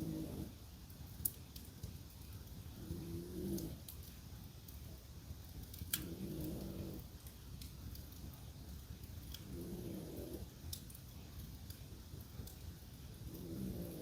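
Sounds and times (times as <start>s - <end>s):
dog snoring: 0.0s - 0.5s, 2.8s - 3.8s, 6.0s - 7.0s, 9.5s - 10.5s, 13.4s - 14.0s
fire popping: 0.0s - 14.0s
wood fire crackling: 0.0s - 14.0s.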